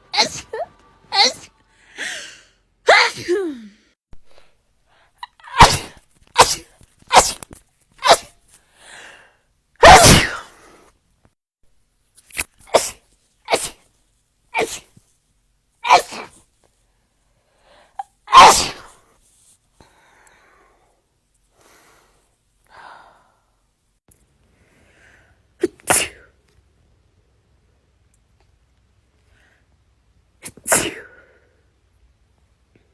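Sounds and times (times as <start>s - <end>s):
person sneezing: 0.2s - 2.3s, 2.9s - 3.7s, 5.2s - 8.4s, 9.8s - 10.8s, 12.6s - 13.9s, 14.6s - 15.0s, 15.8s - 16.4s, 18.0s - 19.0s, 25.6s - 26.4s, 30.4s - 31.4s.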